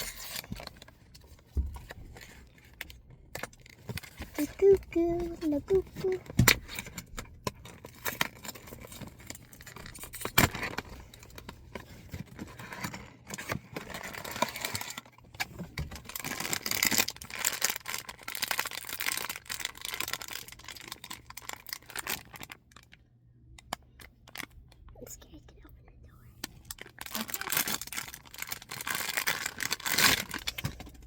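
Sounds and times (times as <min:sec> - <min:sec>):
packaging tearing and crinkling: 0:00.0 - 0:01.0, 0:07.7 - 0:22.9, 0:26.6 - 0:31.0.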